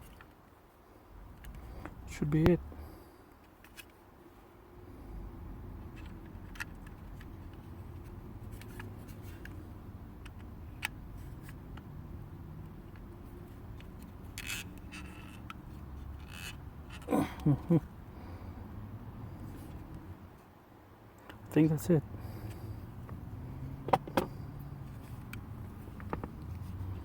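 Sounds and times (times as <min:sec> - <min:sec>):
plastic parts clicking and scraping: 0:03.4 - 0:04.0, 0:05.8 - 0:11.9, 0:12.6 - 0:17.1, 0:23.8 - 0:27.0.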